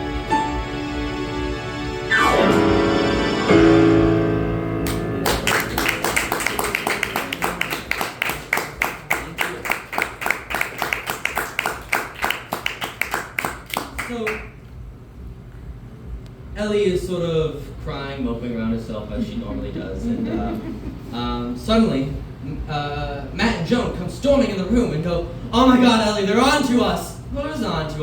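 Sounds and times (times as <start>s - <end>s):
staccato keyboard chord stabs: 0.0s - 6.8s
keyboard chords: 0.0s - 7.4s.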